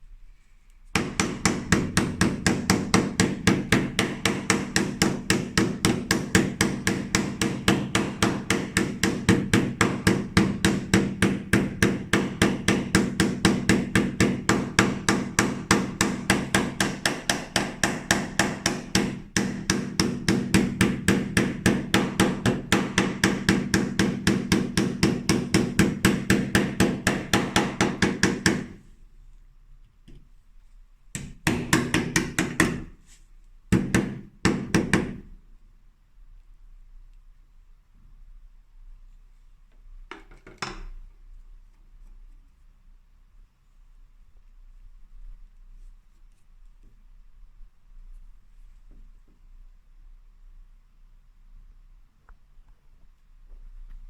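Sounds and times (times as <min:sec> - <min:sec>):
hammer striking rapidly: 0:01.0 - 0:28.8, 0:31.2 - 0:32.9.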